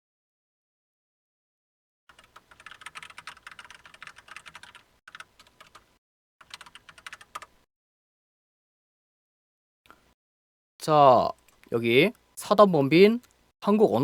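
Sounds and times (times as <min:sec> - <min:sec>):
typing on computer keyboard: 0:02.1 - 0:07.5.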